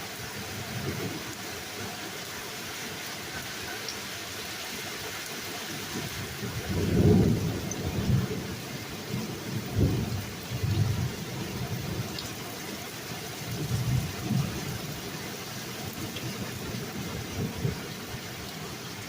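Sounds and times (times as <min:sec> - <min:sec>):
steady rain falling: 0:00.0 - 0:19.0
thunder rumbling: 0:06.0 - 0:12.1.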